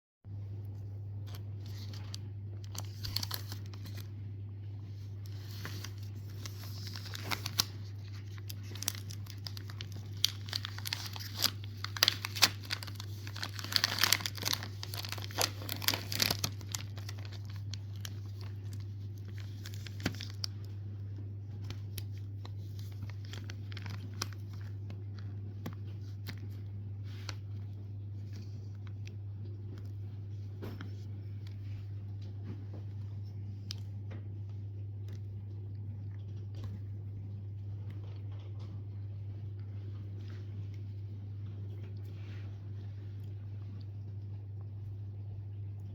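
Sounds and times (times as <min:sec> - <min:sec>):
steady low hum: 0:00.3 - 0:45.9
wrapper tearing and crinkling: 0:01.2 - 0:04.1, 0:05.2 - 0:20.8, 0:21.5 - 0:27.6.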